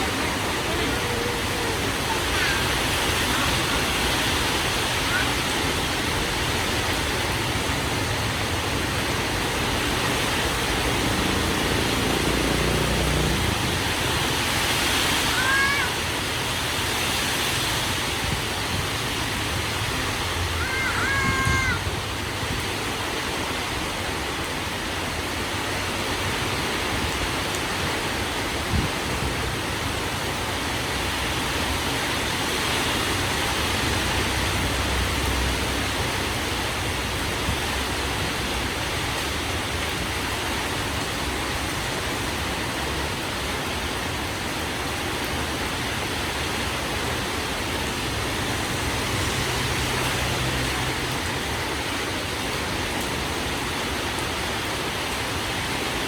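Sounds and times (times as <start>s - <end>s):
heavy rain in strong wind: 0.0s - 56.0s.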